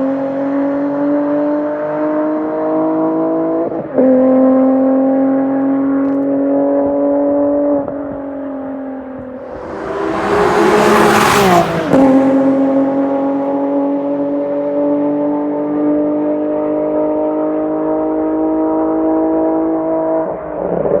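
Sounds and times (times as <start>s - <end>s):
car engine revving: 9.4s - 15.0s.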